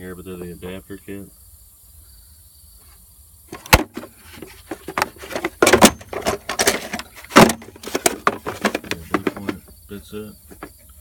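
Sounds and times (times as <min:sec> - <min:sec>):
metal tools clattering and rattling: 0:03.7 - 0:09.6.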